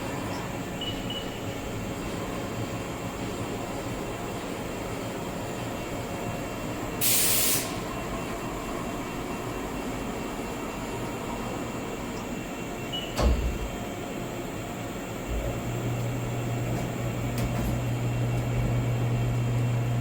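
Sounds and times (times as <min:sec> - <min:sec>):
machinery and ventilation hum: 0:00.0 - 0:20.0
sharp hiss of air: 0:07.0 - 0:07.9.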